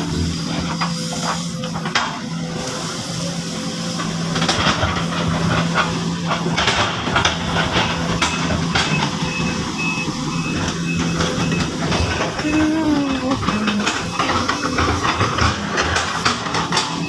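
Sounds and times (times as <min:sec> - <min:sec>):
excavator diesel engine humming: 0:00.0 - 0:17.0
machine clanks and knocks: 0:04.4 - 0:17.0.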